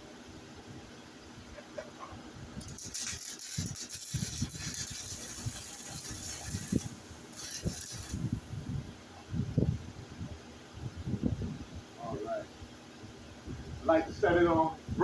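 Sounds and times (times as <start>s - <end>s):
welding arc crackling: 2.6s - 8.6s.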